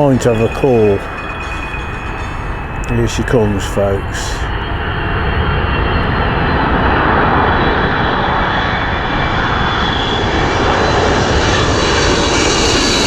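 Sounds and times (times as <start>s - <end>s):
airliner engine noise overhead: 0.0s - 13.0s
faint high whine: 0.0s - 13.0s.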